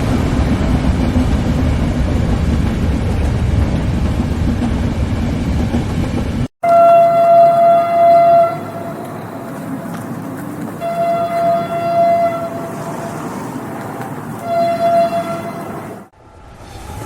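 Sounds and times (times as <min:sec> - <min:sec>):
moving train rumble: 0:00.0 - 0:17.0
train horn blasts: 0:06.6 - 0:09.1, 0:10.8 - 0:13.0, 0:14.4 - 0:16.0.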